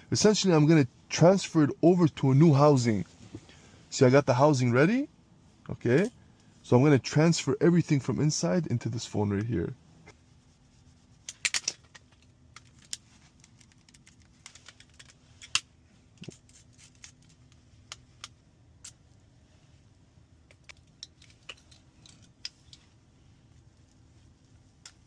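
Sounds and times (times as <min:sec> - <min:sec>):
small metal tools clicking: 0:20.5 - 0:22.8.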